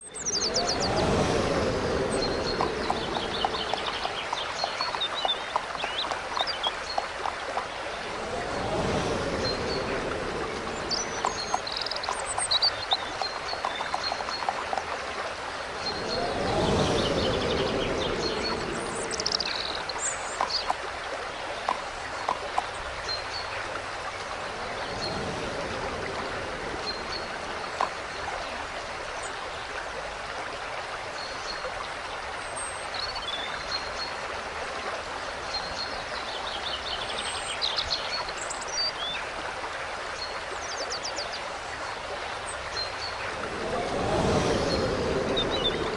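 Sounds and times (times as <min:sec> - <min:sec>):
small birds chirping: 0:00.0 - 0:14.8, 0:15.8 - 0:20.8, 0:42.8 - 0:45.9
babbling stream: 0:00.0 - 0:45.9
rising and falling call: 0:43.2 - 0:45.9.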